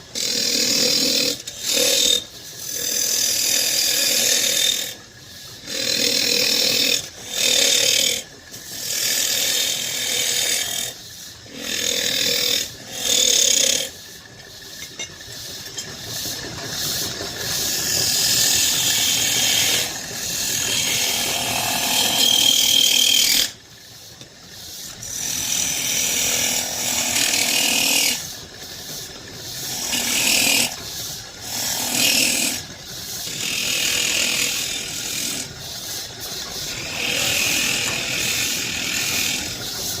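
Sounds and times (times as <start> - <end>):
tool rasping wood: 0.1 - 5.0, 5.6 - 8.2, 8.8 - 14.0, 17.0 - 23.6, 24.9 - 28.3, 29.6 - 30.8, 31.4 - 35.5, 36.4 - 40.0.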